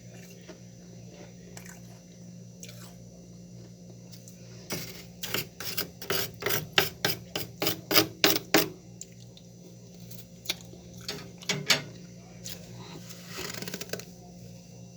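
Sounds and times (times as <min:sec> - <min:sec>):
frost being scraped: 0:04.7 - 0:08.0.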